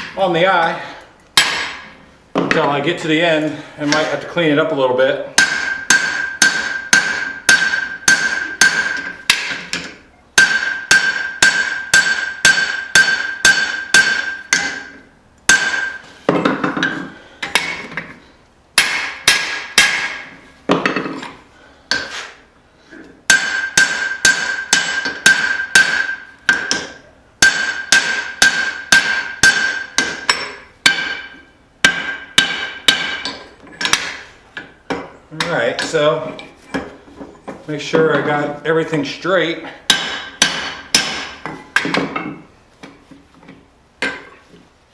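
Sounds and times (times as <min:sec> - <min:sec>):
anvil ringing: 0:05.4 - 0:09.8, 0:10.4 - 0:17.8, 0:23.3 - 0:34.2, 0:39.9 - 0:42.3, 0:44.0 - 0:44.4
hammer blows on anvil: 0:05.4 - 0:17.9.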